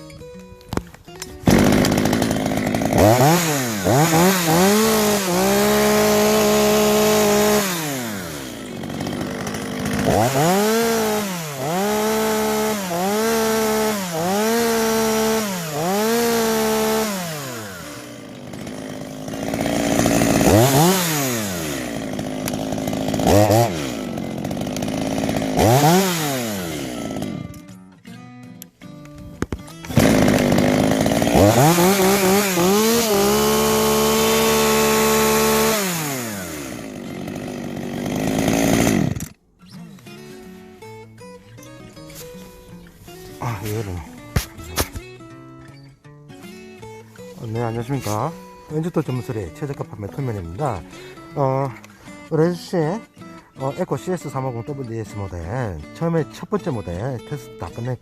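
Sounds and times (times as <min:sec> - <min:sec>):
chainsaw engine revving: 0:01.4 - 0:27.6, 0:29.8 - 0:39.4, 0:43.4 - 0:45.0.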